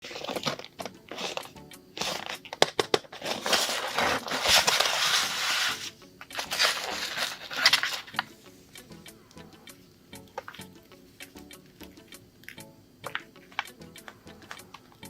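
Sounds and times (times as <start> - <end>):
crunching and crinkling: 0.0 - 8.3
background music: 0.0 - 15.0.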